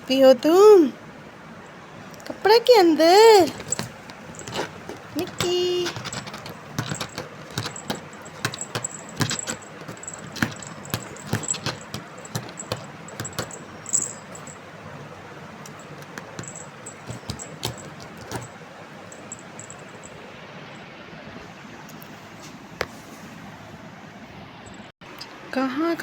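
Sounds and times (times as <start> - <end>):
faint rustling: 3.3 - 14.7
light clicks and clinks: 3.4 - 14.6, 15.6 - 20.1.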